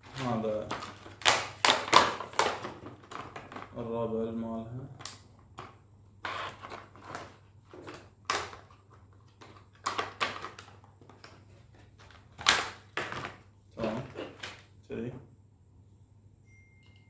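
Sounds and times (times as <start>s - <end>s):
packaging rustling and crackling: 0.0s - 3.9s.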